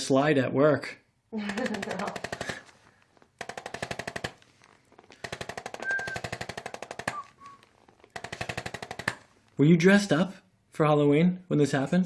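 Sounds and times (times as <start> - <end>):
rapid instrument taps: 1.5 - 9.3.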